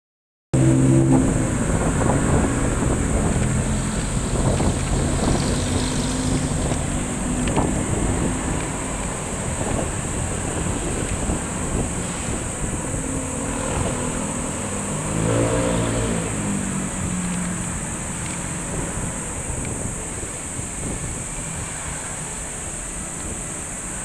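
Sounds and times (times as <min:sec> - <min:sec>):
engine idling: 0:00.7 - 0:15.2.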